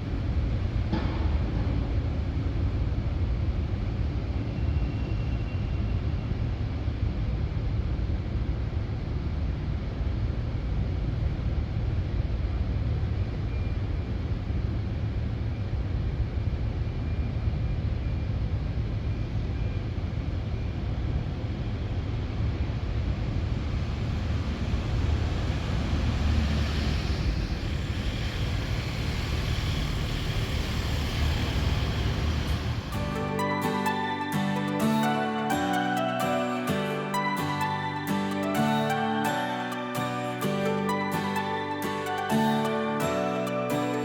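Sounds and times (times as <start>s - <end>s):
ferry engine rumble: 18.3s - 33.2s
music: 32.9s - 44.0s.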